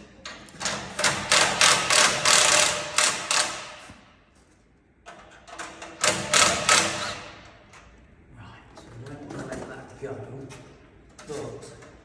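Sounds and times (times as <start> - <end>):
impact wrench hammering on bolt: 0.7 - 4.1, 5.7 - 7.5.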